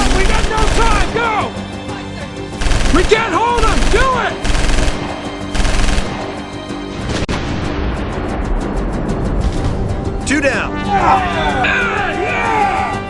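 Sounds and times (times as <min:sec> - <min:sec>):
automatic gunfire bursts: 0:00.0 - 0:01.2, 0:02.6 - 0:06.2
background music: 0:00.0 - 0:13.0.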